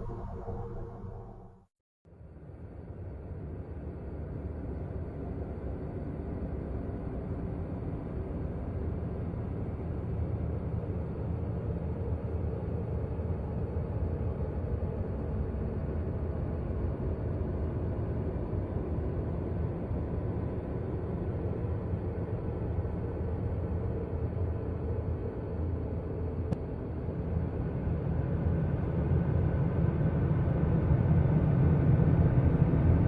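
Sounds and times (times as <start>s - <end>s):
low rumbling drone: 0.0s - 1.7s.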